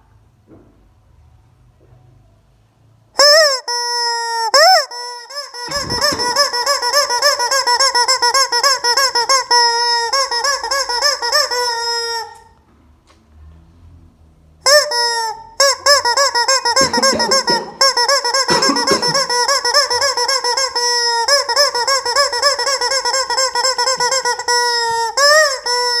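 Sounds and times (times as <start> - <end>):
rubber chicken toy squawking: 3.2 - 12.5, 14.6 - 26.0.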